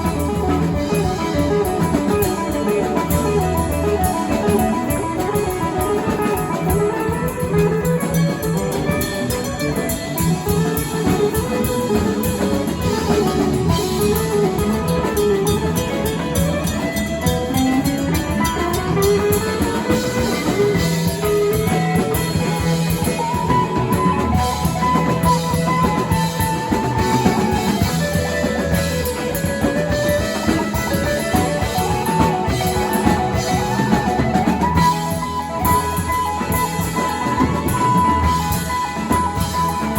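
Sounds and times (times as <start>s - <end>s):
bass and drum beat: 0.0s - 39.9s
melodic guitar with bending notes: 0.0s - 39.9s.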